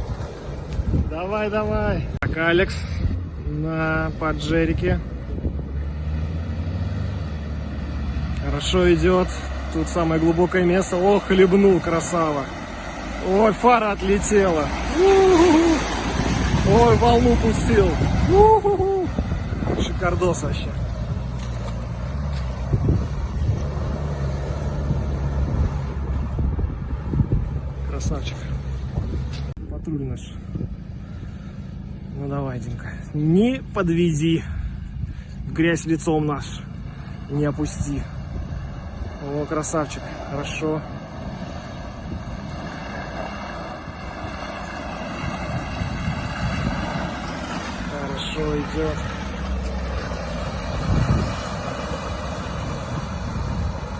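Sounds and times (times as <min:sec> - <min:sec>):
off-road vehicle engine under load: 0:00.0 - 0:53.9.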